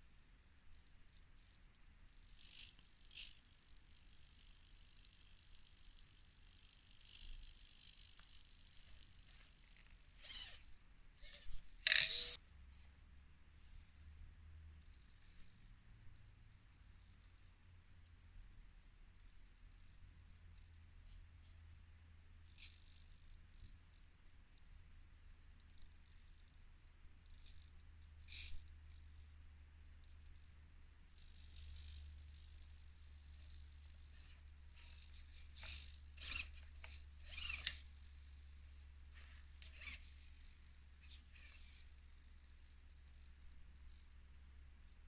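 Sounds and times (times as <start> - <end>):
rc crawler rattles and clicks: 7.0 - 12.4, 31.1 - 42.0.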